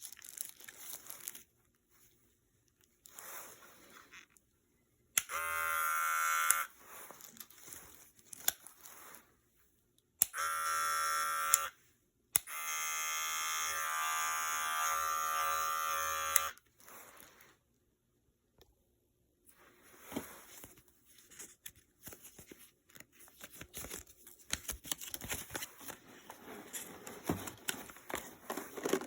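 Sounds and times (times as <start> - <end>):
hair clippers buzzing: 5.2 - 6.7, 10.2 - 11.8, 12.4 - 16.6.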